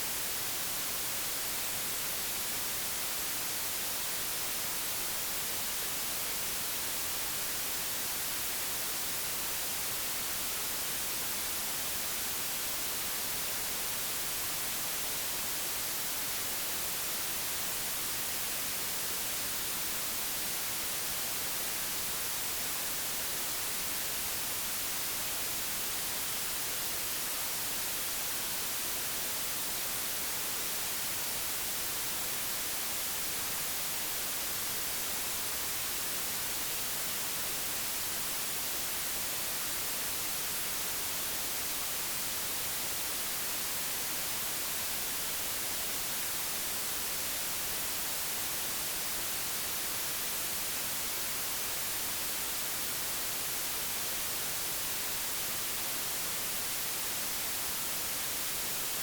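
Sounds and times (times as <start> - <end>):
white noise hiss: 0.0 - 59.0.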